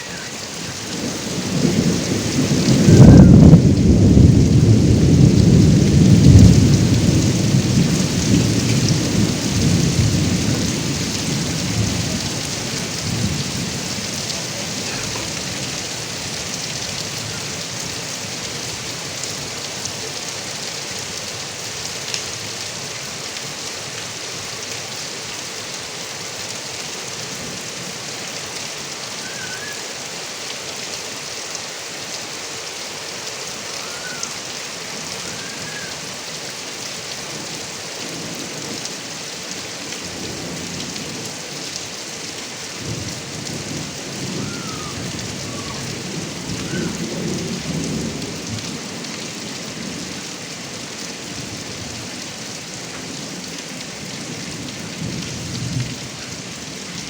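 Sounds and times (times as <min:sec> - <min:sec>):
thunder rumbling: 0:00.0 - 0:18.8, 0:42.8 - 0:48.8
heavy rain falling: 0:00.0 - 0:57.0.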